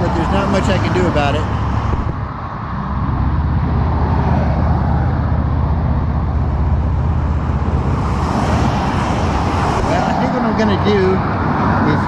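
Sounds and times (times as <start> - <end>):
traffic engine rumble: 0.0 - 12.0.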